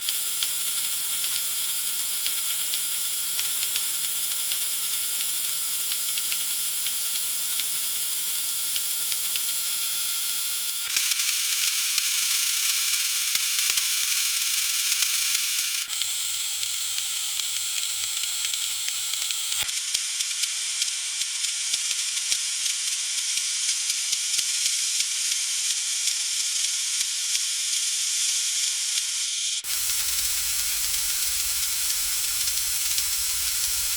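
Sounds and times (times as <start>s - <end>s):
food sizzling in a frying pan: 29.6s - 33.9s.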